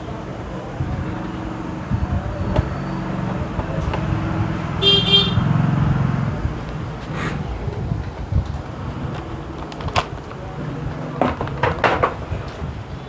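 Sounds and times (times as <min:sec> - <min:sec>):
road traffic: 0:00.0 - 0:13.0
vehicle engine passing: 0:00.8 - 0:09.6
car horn toots: 0:04.8 - 0:05.6.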